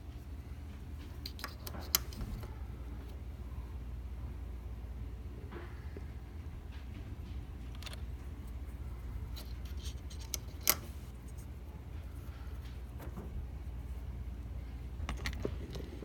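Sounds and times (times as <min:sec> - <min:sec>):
low steady hum: 0:00.0 - 0:16.0
light clicks and handling: 0:00.6 - 0:03.2, 0:06.7 - 0:13.9.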